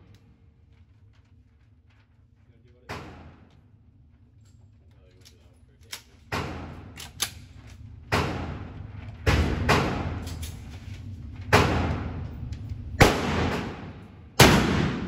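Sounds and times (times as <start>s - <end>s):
gunshots with echo: 8.1s - 10.3s, 11.5s - 12.2s, 13.0s - 15.0s.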